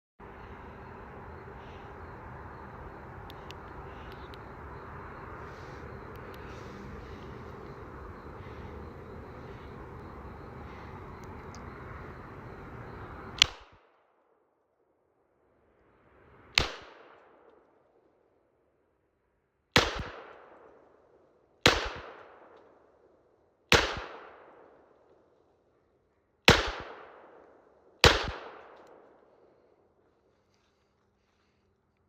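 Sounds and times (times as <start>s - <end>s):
pistol shots with echo: 19.8s - 20.7s, 21.6s - 22.5s, 23.7s - 24.8s, 26.5s - 29.1s.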